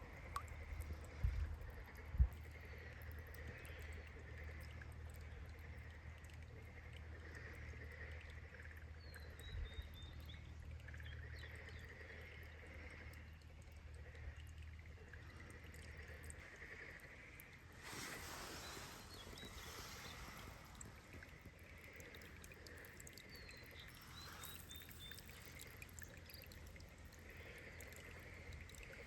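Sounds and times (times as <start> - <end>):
frogs calling: 16.1 - 20.8.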